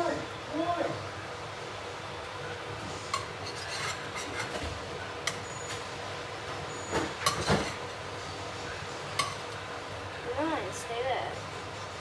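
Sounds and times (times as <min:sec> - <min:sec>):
rubbing and scraping on counter: 0:03.4 - 0:04.7.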